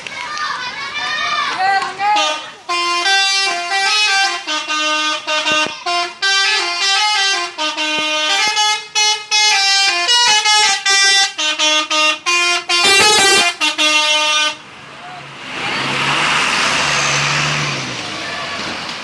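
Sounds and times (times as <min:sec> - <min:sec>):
bus musical air horn melody: 0:02.2 - 0:14.6
noisy horn blast: 0:02.2 - 0:14.6.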